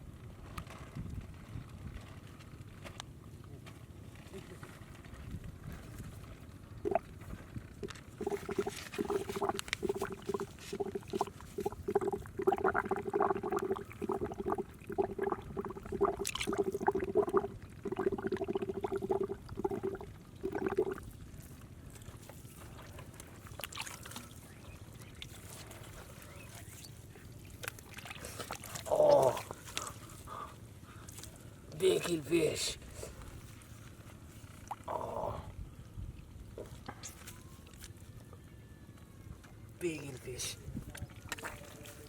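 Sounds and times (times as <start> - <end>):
water gurgling: 6.7 - 21.5, 27.4 - 29.7.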